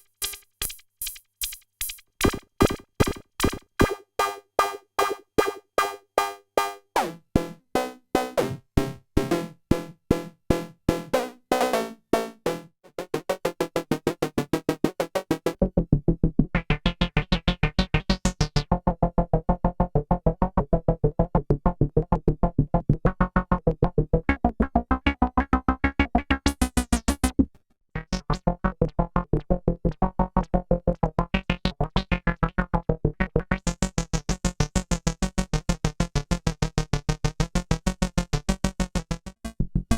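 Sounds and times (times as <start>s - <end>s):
synthesizer staccato notes: 2.2s - 8.6s, 23.0s - 27.4s.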